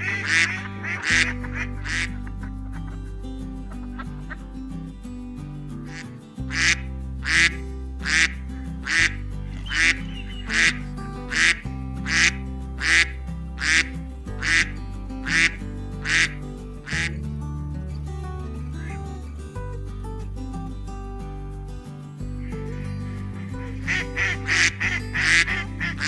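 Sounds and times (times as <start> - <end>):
duck quacking: 0.0 - 2.9, 5.9 - 8.3, 8.9 - 14.7, 15.3 - 17.1, 23.8 - 26.0
background music: 0.0 - 26.0.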